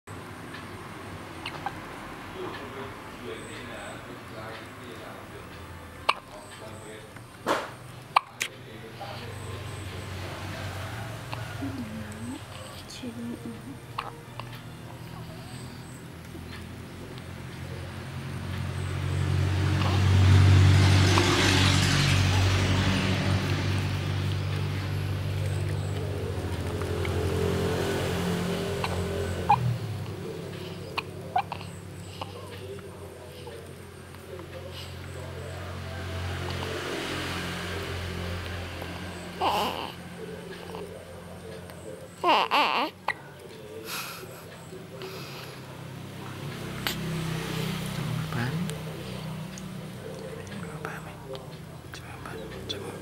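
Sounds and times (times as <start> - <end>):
vehicle engine: 0.1 - 53.0
baby vocalizing: 8.1 - 8.5, 11.1 - 15.8, 25.4 - 32.6, 39.1 - 40.9, 41.9 - 43.4.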